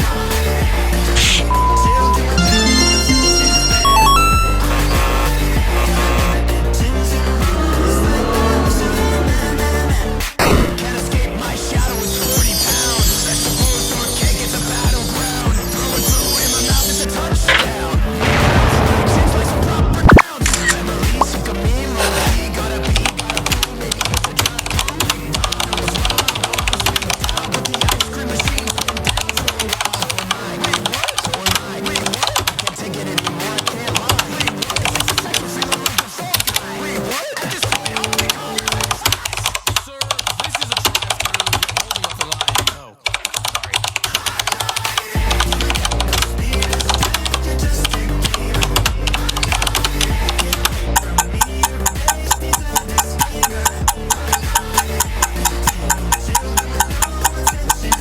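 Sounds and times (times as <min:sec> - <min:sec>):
background music: 0:00.0 - 0:43.1, 0:43.8 - 0:58.0
rapid clicks: 0:22.0 - 0:36.8, 0:37.4 - 0:58.0.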